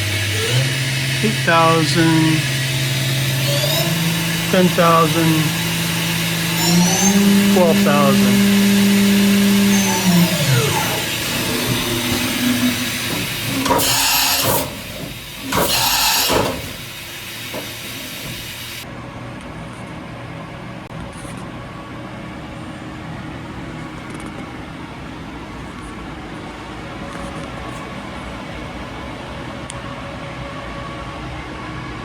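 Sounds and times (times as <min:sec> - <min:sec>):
machining center humming: 0:00.0 - 0:20.9, 0:21.5 - 0:30.2
hissing air bursts: 0:10.8 - 0:18.8.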